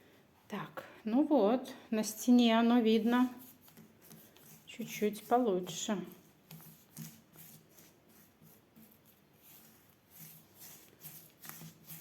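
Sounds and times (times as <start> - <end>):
paint brush strokes on wall: 2.6 - 12.0.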